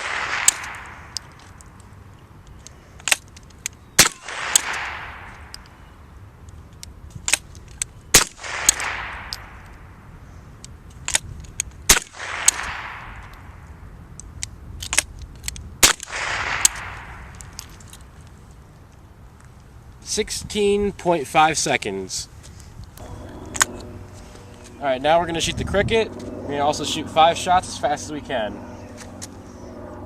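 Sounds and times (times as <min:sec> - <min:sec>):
rifle shots: 0:00.0 - 0:01.1, 0:04.0 - 0:05.5, 0:08.1 - 0:09.5, 0:11.9 - 0:13.2, 0:15.8 - 0:17.3
metallic clicks of rifle action: 0:06.4 - 0:08.0, 0:14.1 - 0:18.1.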